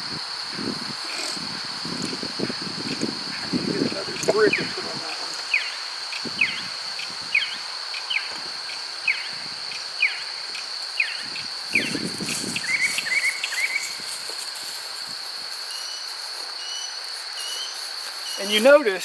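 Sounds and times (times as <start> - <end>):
high insect trill: 0.0 - 19.0
bird chirping: 11.0 - 14.0.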